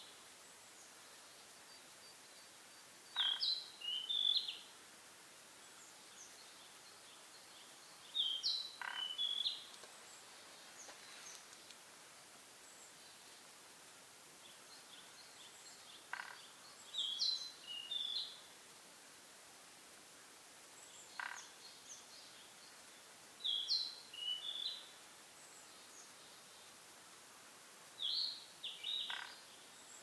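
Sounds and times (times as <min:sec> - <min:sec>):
small bird singing: 0:00.8 - 0:04.7, 0:05.6 - 0:11.6, 0:14.4 - 0:18.5, 0:20.8 - 0:26.7, 0:28.0 - 0:30.0.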